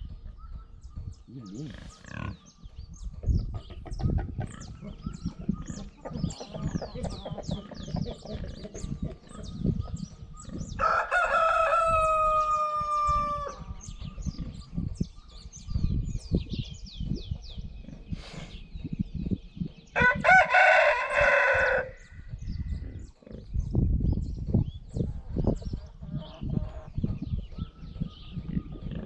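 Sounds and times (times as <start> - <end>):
small birds chirping: 0.0 - 29.0
rooster crowing: 10.8 - 13.6, 20.0 - 22.0.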